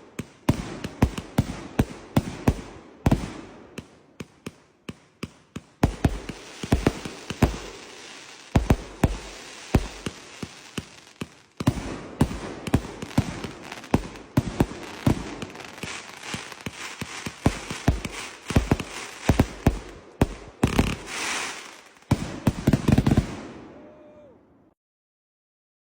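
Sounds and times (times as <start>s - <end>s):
fireworks bangs: 0.0s - 24.3s
fireworks crackling hiss: 5.8s - 23.3s.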